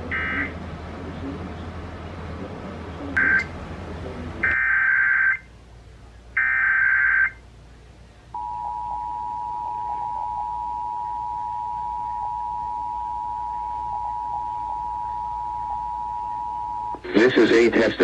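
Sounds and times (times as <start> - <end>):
two-tone attention signal: 8.4 - 17.0.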